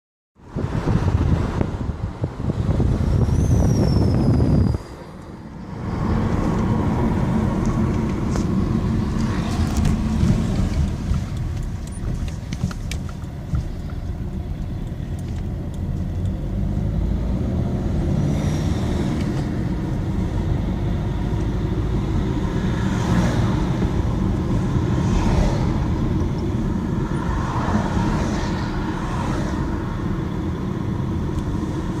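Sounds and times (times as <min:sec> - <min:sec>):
diesel engine accelerating hard: 0:00.4 - 0:32.0.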